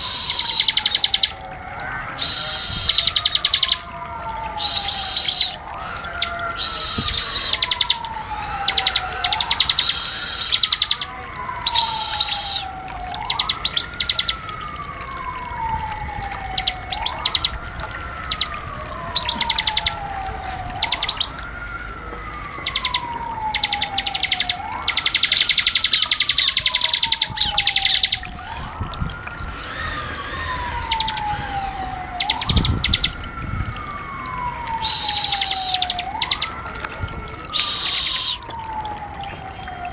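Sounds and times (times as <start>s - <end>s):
falling whistle: 0.0s - 1.2s, 2.2s - 3.8s, 4.5s - 8.0s, 8.6s - 11.0s, 11.6s - 14.3s, 34.6s - 36.6s, 37.4s - 38.6s.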